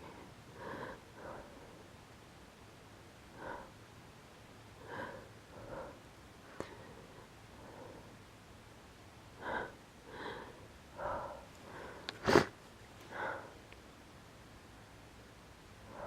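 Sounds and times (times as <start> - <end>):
person hitching breaths: 0.0 - 1.9, 3.3 - 3.8, 4.8 - 8.2, 9.4 - 12.5, 13.1 - 13.7
person sneezing: 12.2 - 12.5.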